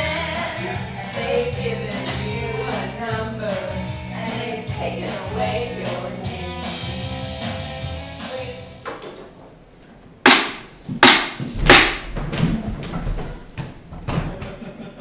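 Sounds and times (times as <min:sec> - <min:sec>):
music: 0:00.0 - 0:08.9
sharp cracks or bangs: 0:10.3 - 0:12.4.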